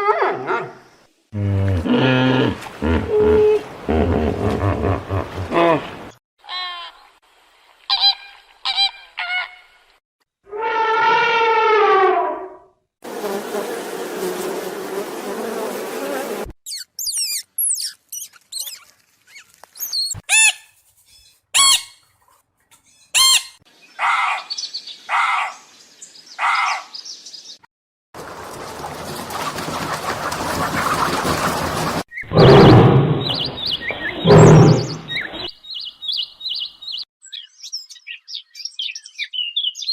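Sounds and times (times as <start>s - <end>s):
bird chirping and whistling: 16.7s - 20.2s, 32.1s - 39.9s
harsh animal calls: 29.4s - 35.5s.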